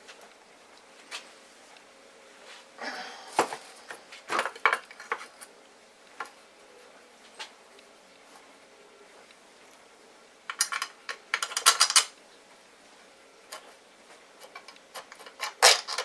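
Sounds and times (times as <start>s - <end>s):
plastic and metal parts clicking: 10.5s - 12.1s, 14.4s - 16.0s.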